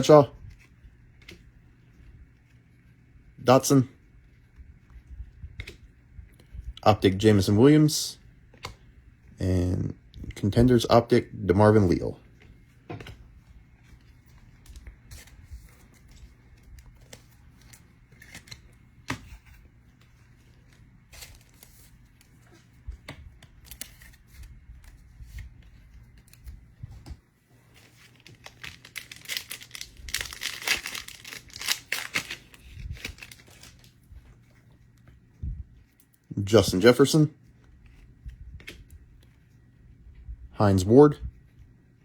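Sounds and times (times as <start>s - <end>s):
cards clicking and tapping: 8.5s - 8.9s
wrapper tearing and crinkling: 28.1s - 33.9s.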